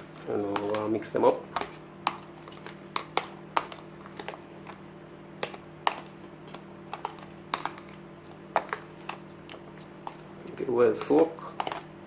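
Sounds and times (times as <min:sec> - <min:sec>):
utensil tapping a basin: 0:00.0 - 0:04.8, 0:05.4 - 0:11.9
faint steady hum: 0:00.0 - 0:12.0.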